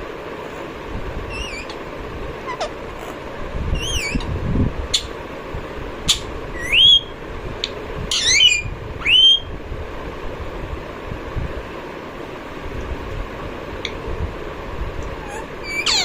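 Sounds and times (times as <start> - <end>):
parakeet whistled calls: 1.3 - 1.8, 2.5 - 2.8, 3.8 - 4.3, 6.1 - 7.1, 8.1 - 9.5, 15.2 - 16.0.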